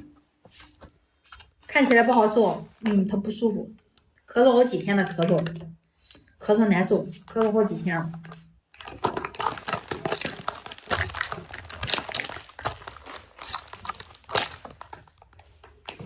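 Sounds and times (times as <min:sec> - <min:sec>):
plastic packaging crinkling: 0:01.7 - 0:02.9, 0:08.2 - 0:16.0.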